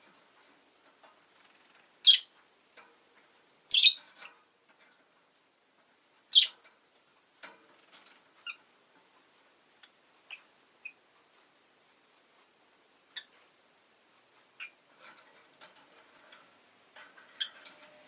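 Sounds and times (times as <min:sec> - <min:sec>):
faint clicks and ticks: 0:00.0 - 0:18.0
bird giving shrill chirps: 0:03.7 - 0:04.0.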